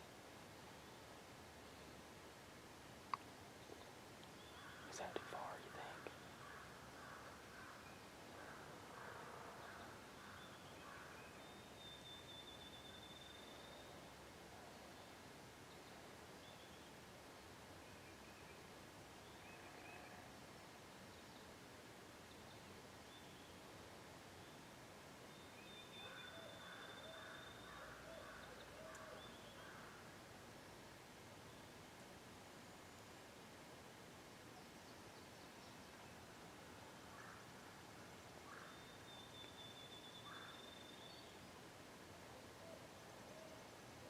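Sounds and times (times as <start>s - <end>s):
distant bird calls: 3.6s - 13.9s, 25.4s - 30.2s, 37.1s - 37.8s, 38.4s - 41.4s.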